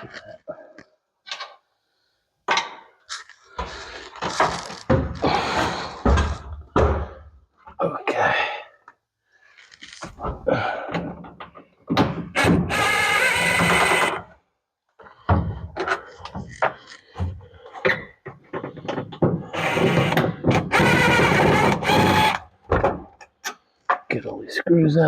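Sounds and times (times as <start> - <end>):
power screwdriver whirring: 19.6 - 22.4.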